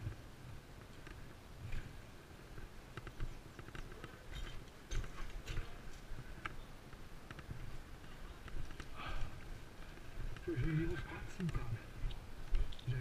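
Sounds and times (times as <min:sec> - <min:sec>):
footsteps: 0:00.8 - 0:13.0
gear rattling knocks and clicks: 0:02.9 - 0:06.6.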